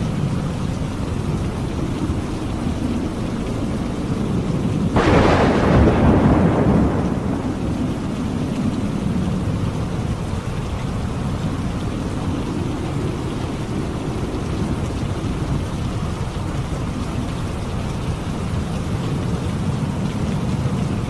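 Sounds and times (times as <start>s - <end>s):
steady rain: 0.0s - 21.0s
thunder crack and rumble: 1.0s - 21.0s.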